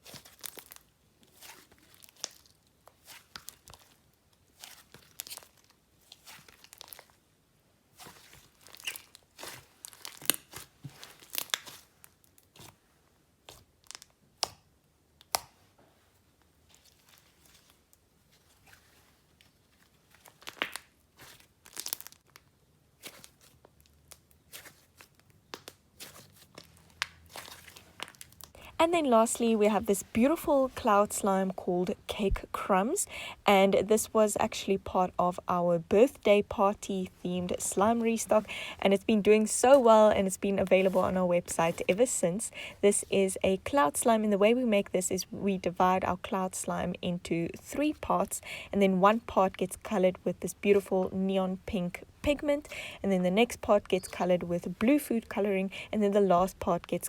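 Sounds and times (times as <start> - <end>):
slime squishing with bubble pops: 8.0 - 12.7, 20.2 - 28.6.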